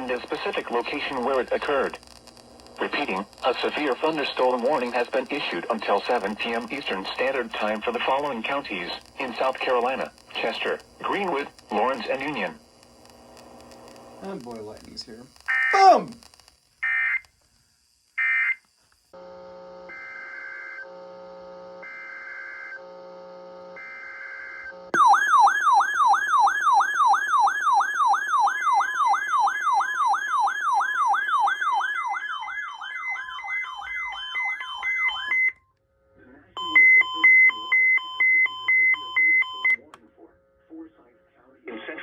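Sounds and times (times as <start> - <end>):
yelping siren tone: 15.6 - 16.2, 30.9 - 35.5.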